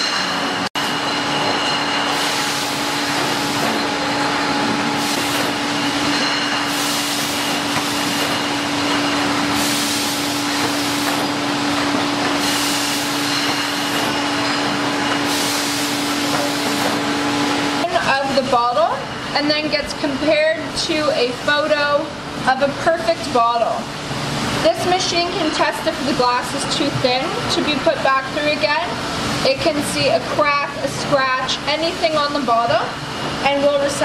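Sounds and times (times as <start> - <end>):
bottling machinery humming: 0.0 - 34.0
machinery hiss: 2.1 - 3.8, 4.6 - 6.0, 6.6 - 14.3, 15.2 - 17.8.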